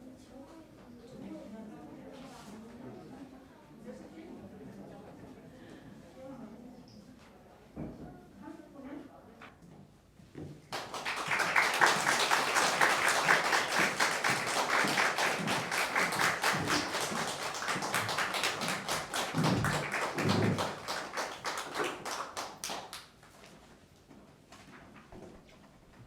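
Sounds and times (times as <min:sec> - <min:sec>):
audience applause: 0:10.7 - 0:23.0.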